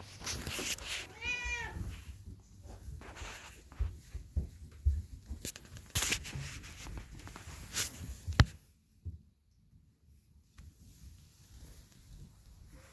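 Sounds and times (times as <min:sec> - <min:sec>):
rustling: 0:00.0 - 0:08.7.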